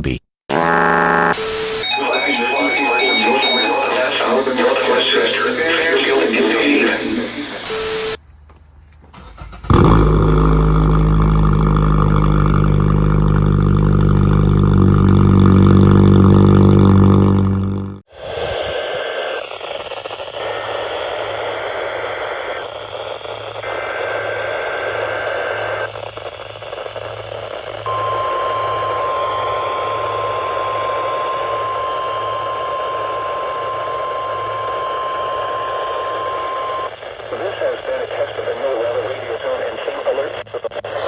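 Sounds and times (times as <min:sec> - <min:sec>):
radio hiss: 0:01.3 - 0:08.2, 0:18.2 - 0:41.0
digital data tone bursts: 0:01.4 - 0:08.2, 0:27.9 - 0:36.9
steady warning alarm tone: 0:01.4 - 0:08.2, 0:27.9 - 0:36.9.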